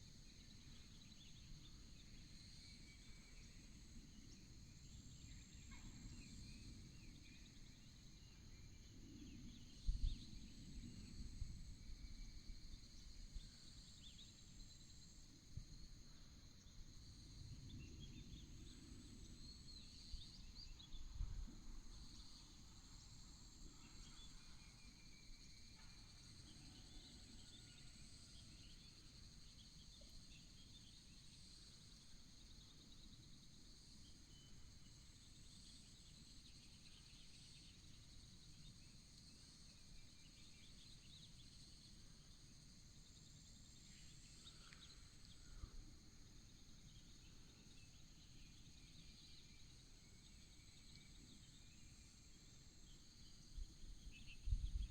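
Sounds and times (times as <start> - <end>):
insects trilling: 21.8 - 54.9.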